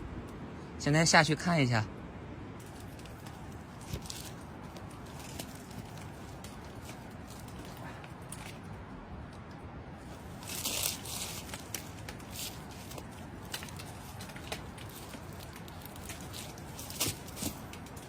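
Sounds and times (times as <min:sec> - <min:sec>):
footsteps on loose dirt and gravel: 0:02.6 - 0:08.8, 0:10.0 - 0:18.0.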